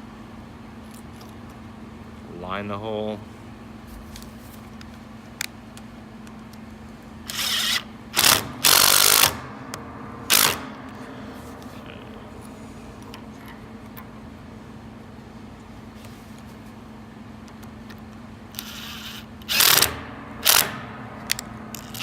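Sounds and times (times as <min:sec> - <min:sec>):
power drill bursts into wood: 0:07.3 - 0:09.4, 0:10.3 - 0:10.6, 0:18.6 - 0:20.9.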